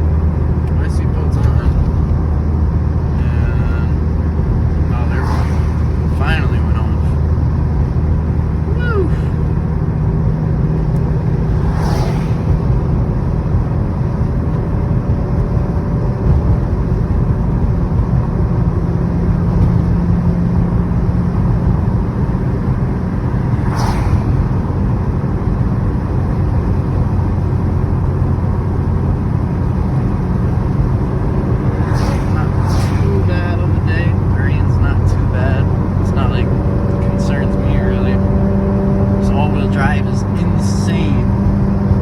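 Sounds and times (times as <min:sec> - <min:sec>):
car engine cruising: 0:00.0 - 0:42.0
road noise: 0:00.0 - 0:42.0
brief whooshes: 0:04.8 - 0:06.1, 0:11.0 - 0:13.2, 0:23.2 - 0:25.0, 0:31.3 - 0:33.9.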